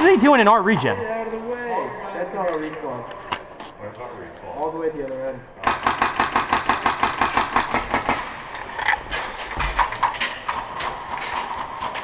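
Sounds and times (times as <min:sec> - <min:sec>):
airsoft guns firing: 0:05.6 - 0:08.5.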